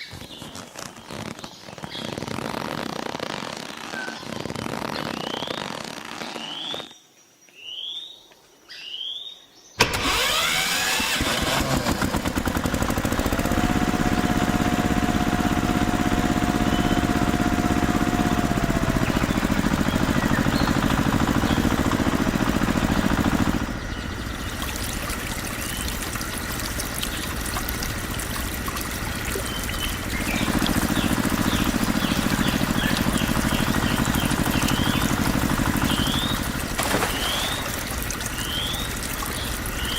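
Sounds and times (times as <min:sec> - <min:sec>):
small engine running: 0:09.8 - 0:39.9.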